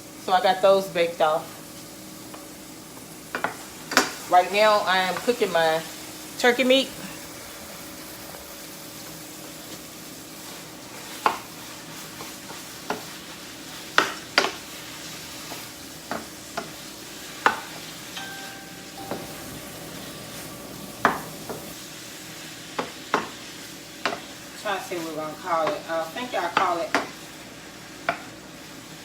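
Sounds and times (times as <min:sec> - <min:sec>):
meat sizzling in a skillet: 0:00.0 - 0:29.0
utensil knocking against pan: 0:21.0 - 0:21.7.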